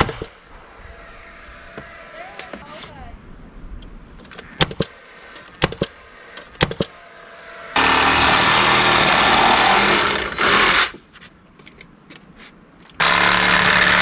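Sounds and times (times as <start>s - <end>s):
power tool running: 7.8s - 11.0s, 13.0s - 14.0s.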